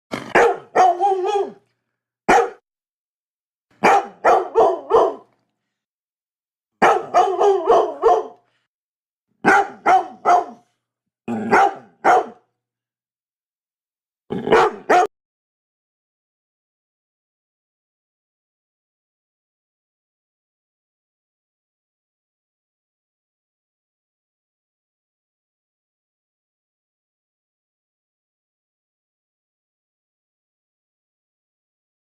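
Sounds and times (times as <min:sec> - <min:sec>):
dog barking: 0:00.2 - 0:01.6, 0:02.3 - 0:02.6, 0:03.8 - 0:05.4, 0:06.8 - 0:08.5, 0:09.4 - 0:12.5, 0:14.4 - 0:15.1.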